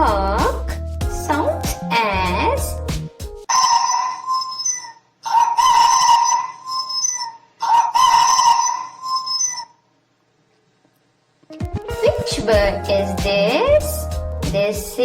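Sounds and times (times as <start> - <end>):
rooster crowing: 3.5 - 9.6.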